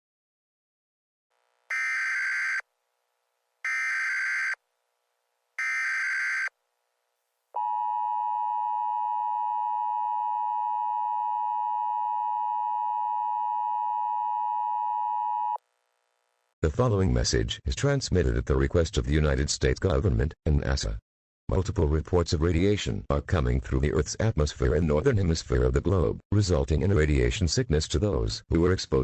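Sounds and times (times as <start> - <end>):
two-tone attention signal: 1.7 - 2.6.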